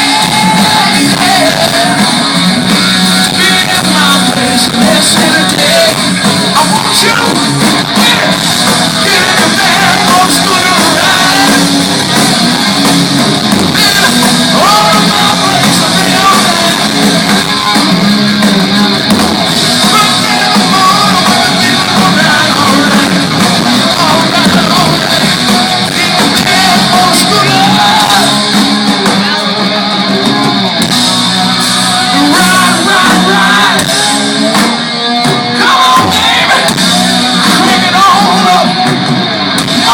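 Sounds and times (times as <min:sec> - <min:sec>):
person singing and shouting: 0:00.0 - 0:02.4, 0:03.0 - 0:12.2, 0:13.7 - 0:18.5, 0:19.7 - 0:34.6, 0:35.2 - 0:39.0
rock band playing live: 0:00.0 - 0:39.9.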